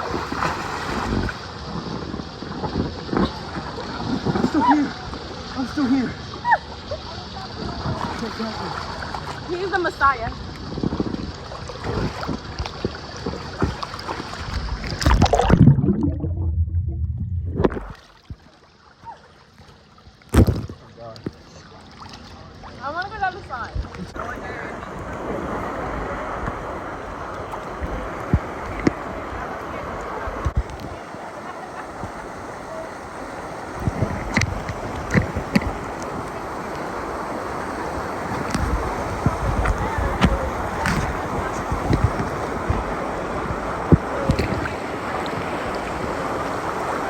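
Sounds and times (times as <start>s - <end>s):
water splashing and rushing: 0.0s - 47.0s
wind rushing over microphone: 10.7s - 13.8s, 14.4s - 18.0s, 33.6s - 47.0s
loud splash: 13.6s - 18.4s.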